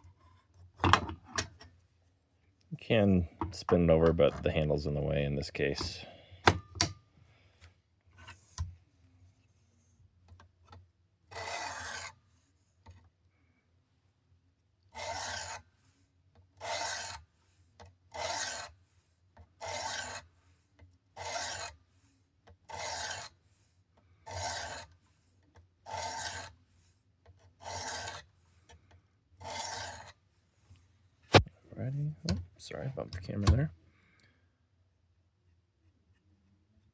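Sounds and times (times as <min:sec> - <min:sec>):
sharpening stone rasping on blade: 0:11.4 - 0:12.1, 0:15.0 - 0:15.6, 0:16.7 - 0:17.2, 0:18.2 - 0:18.7, 0:19.7 - 0:20.2, 0:21.2 - 0:21.7, 0:25.9 - 0:26.5, 0:27.6 - 0:28.2.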